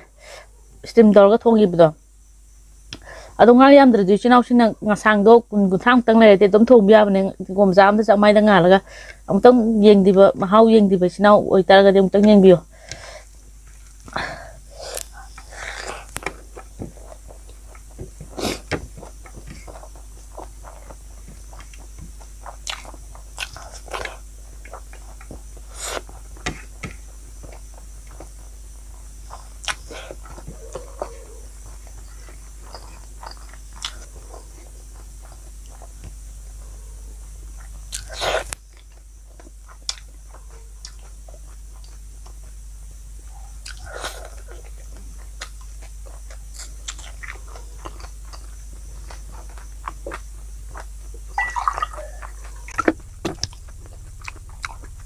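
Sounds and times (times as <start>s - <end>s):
steady low hum: 0.0s - 55.0s
crunching and chewing: 12.9s - 55.0s.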